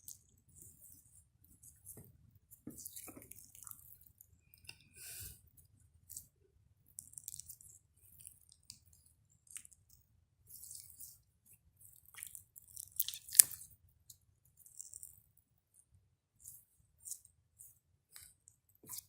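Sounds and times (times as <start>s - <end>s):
slime squishing and crackling: 6.0s - 11.2s, 11.9s - 13.7s.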